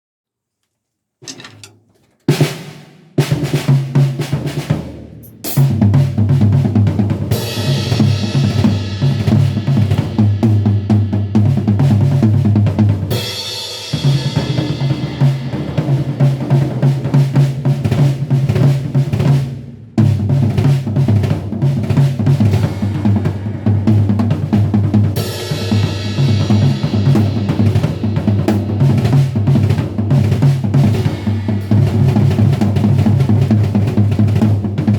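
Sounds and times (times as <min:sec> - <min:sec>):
tom-tom drum hits and fills: 0:01.2 - 0:34.9
bass drum: 0:05.3 - 0:13.1, 0:20.0 - 0:34.9.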